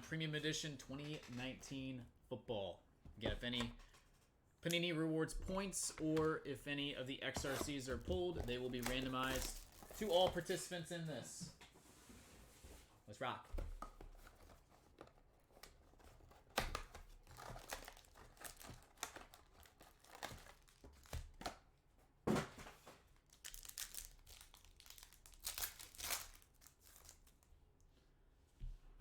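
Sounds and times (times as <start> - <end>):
card pack wrappers tearing: 7.4 - 10.6, 14.6 - 21.4, 23.2 - 27.5.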